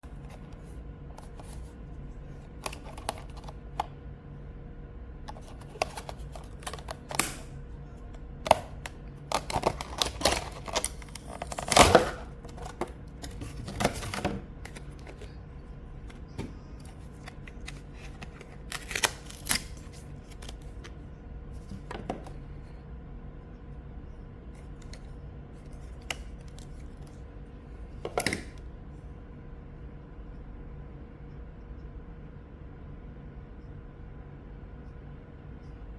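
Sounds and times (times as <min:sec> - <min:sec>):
faint steady hum: 0:00.0 - 0:35.9
keyboard plastic clicks and clacks: 0:05.3 - 0:07.5, 0:08.4 - 0:15.3.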